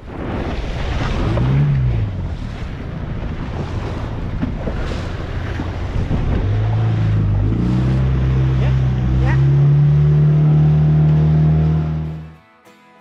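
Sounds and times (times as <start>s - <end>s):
wind buffeting microphone: 0.0s - 9.3s
rushing water: 0.0s - 12.4s
outboard motor running: 1.0s - 12.4s.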